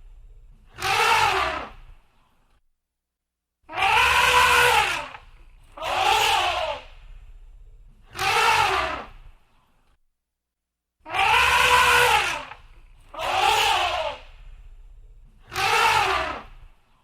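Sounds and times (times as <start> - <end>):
elephant trumpeting: 0.0 - 2.0, 3.7 - 9.2, 11.1 - 16.6.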